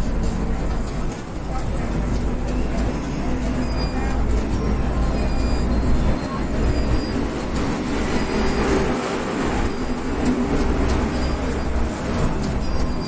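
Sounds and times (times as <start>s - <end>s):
moving vehicle rumbling: 0.0s - 13.0s
faint high squeals: 2.6s - 9.0s, 10.8s - 13.0s.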